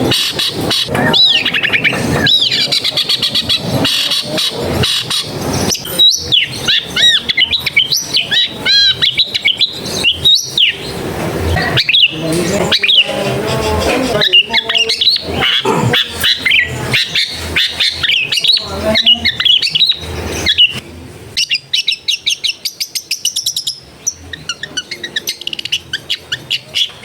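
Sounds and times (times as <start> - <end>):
shrike singing whistles and trills: 0.0 - 20.8.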